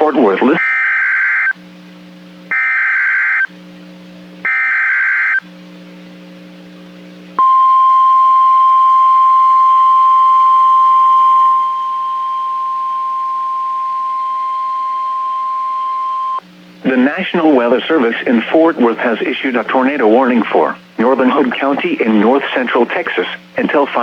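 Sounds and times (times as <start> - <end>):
steady warning alarm tone: 0.0 - 1.6, 2.5 - 3.5, 4.4 - 5.4, 7.4 - 17.0
faint hum: 0.0 - 24.0.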